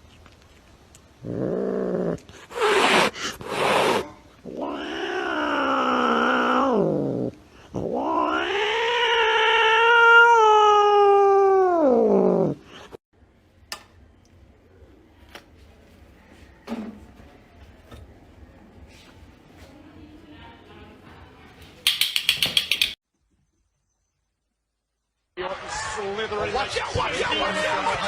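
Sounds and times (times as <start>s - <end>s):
cat yowling: 3.9s - 12.6s.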